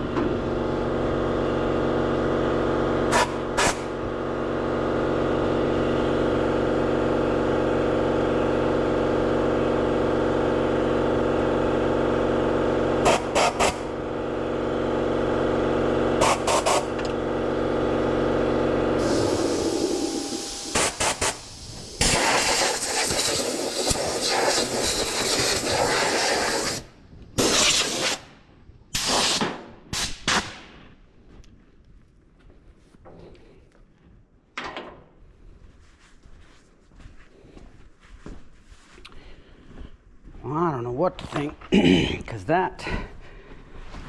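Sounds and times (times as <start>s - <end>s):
machine hum: 0.0s - 24.2s
compressed air hissing: 16.2s - 16.9s, 19.0s - 28.2s.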